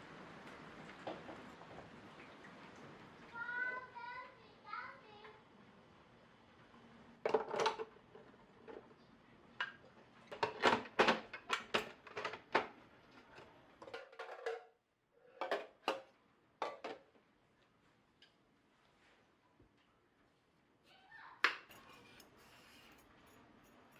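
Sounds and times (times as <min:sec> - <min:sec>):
dishes and utensils clinking: 0:21.5 - 0:23.9.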